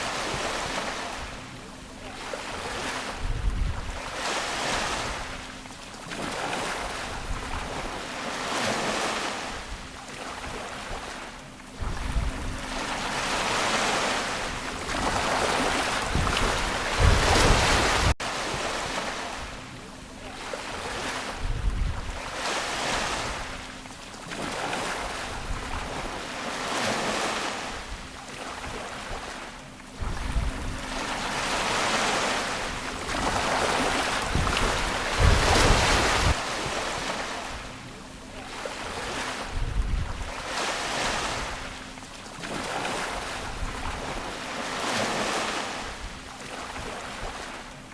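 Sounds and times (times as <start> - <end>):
ocean waves washing onto shore: 0.0 - 47.9.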